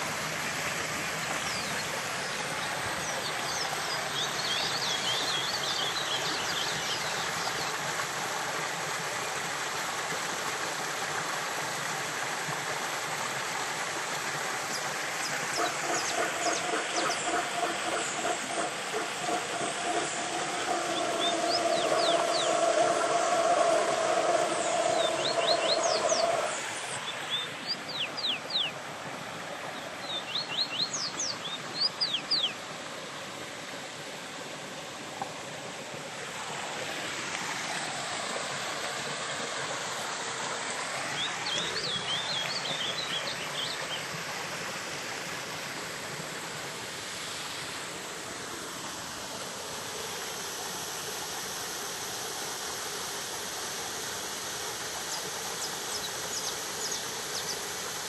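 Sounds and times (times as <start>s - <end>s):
waterfall and stream rushing: 0.0s - 58.0s
bird calling sharp notes: 15.6s - 26.6s.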